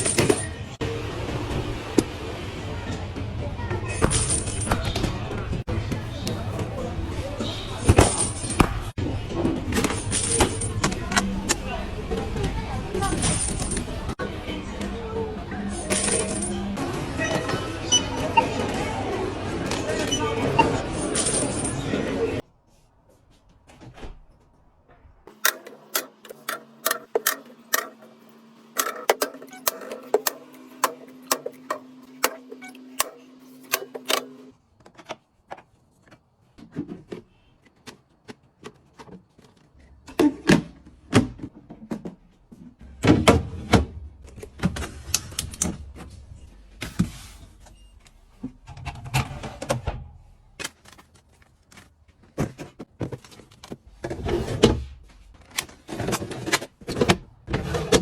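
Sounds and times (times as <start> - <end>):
heavy thuds: 7.6 - 9.0.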